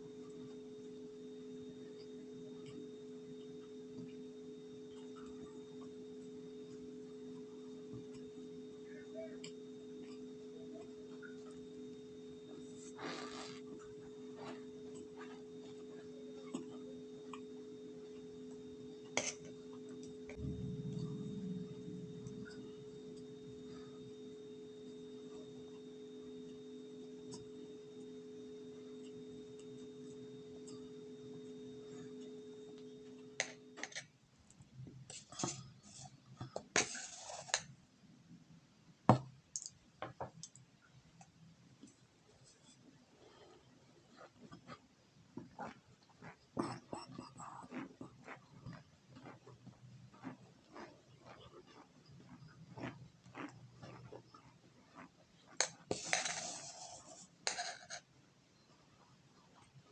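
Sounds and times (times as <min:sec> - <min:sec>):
steady hum: 0:00.0 - 0:37.7
crunchy eating rustle: 0:45.5 - 0:57.4.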